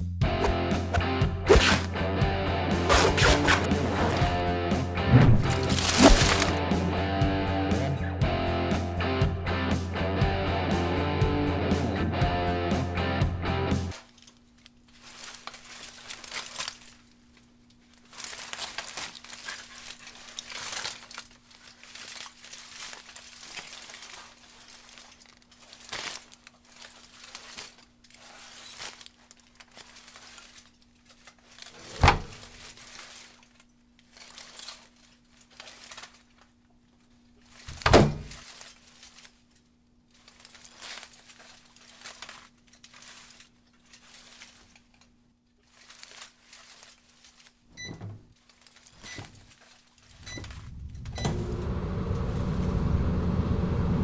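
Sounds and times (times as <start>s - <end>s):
packaging crinkling and rustling: 5.2s - 6.6s, 13.9s - 47.7s, 48.3s - 50.9s.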